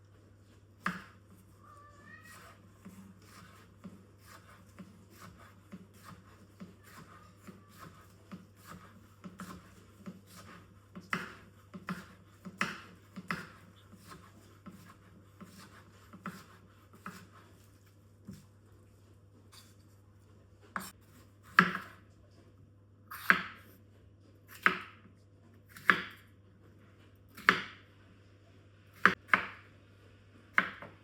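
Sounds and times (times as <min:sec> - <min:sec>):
knife chopping on cutting board: 0:00.8 - 0:01.2, 0:02.3 - 0:17.5, 0:20.8 - 0:22.0, 0:23.1 - 0:23.8, 0:24.5 - 0:25.1, 0:25.7 - 0:26.3, 0:27.3 - 0:27.8, 0:29.0 - 0:29.6, 0:30.5 - 0:31.0.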